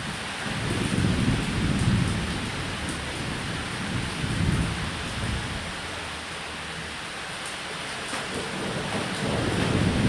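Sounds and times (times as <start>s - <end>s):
heavy rain on a roof: 0.0s - 10.0s
thunder rumbling: 8.6s - 10.0s.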